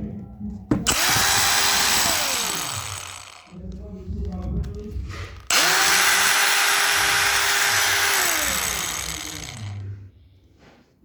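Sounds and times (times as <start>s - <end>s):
angle grinder whining: 0.8s - 3.6s, 5.4s - 9.9s.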